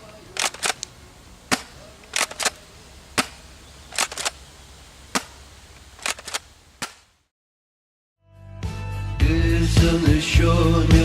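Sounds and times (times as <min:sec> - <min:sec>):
pump action clicks: 0:00.4 - 0:00.9, 0:03.9 - 0:04.4, 0:06.0 - 0:06.4
airsoft shotgun shot crack: 0:01.5 - 0:02.5, 0:06.8 - 0:07.1.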